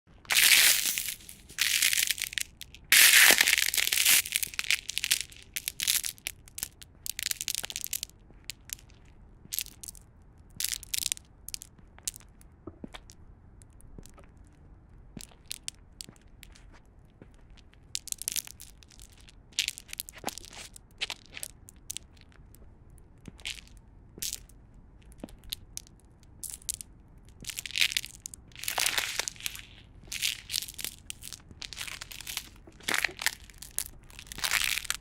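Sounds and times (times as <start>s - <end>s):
ice cracking and crunching: 0.2s - 9.0s, 18.0s - 22.4s, 25.2s - 35.0s.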